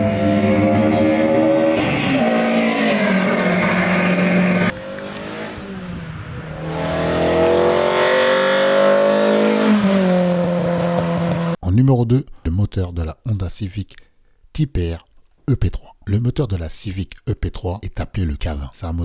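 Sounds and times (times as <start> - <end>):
car engine revving: 0.0 - 11.6.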